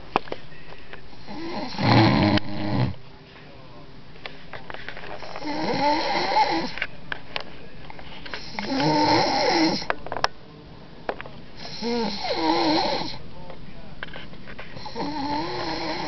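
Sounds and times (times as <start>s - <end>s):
person snoring: 1.2s - 3.0s, 5.3s - 6.8s, 8.4s - 9.9s, 11.6s - 13.2s, 14.8s - 16.0s.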